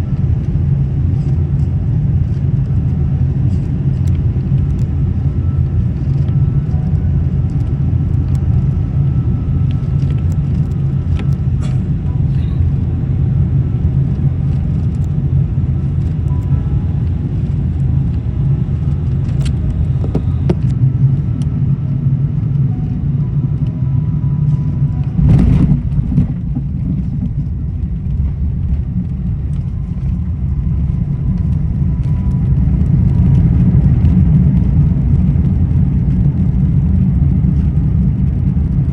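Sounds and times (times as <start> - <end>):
airliner rumbling on ground: 0.0 - 38.9
rush of noise: 9.4 - 38.9.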